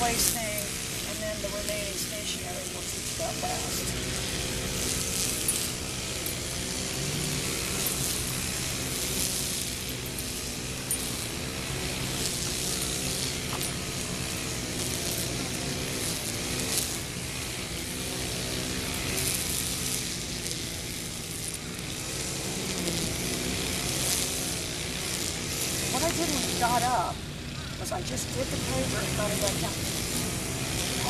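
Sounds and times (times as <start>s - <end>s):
engine running: 0.0s - 31.0s.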